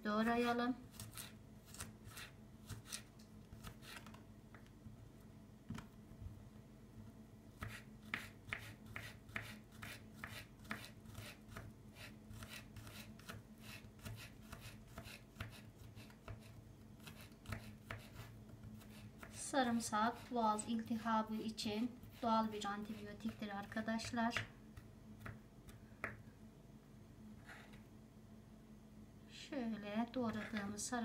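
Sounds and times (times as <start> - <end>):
knife chopping garlic: 7.6 - 19.4, 21.4 - 26.2.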